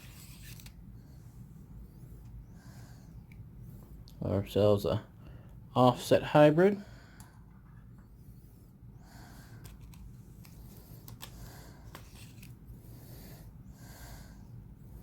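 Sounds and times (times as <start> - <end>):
breathing through the nose: 12.8 - 14.6.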